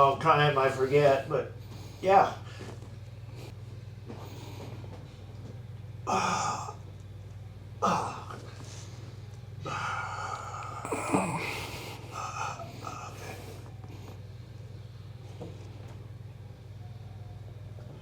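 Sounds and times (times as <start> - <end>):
steady low hum: 0.0 - 18.0
person breathing out heavily: 9.6 - 13.9.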